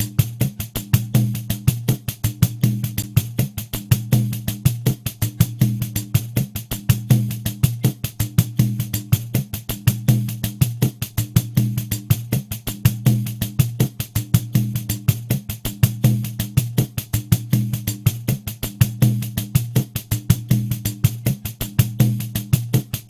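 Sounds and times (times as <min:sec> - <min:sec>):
pandeiro playing rhythm: 0:00.0 - 0:23.0.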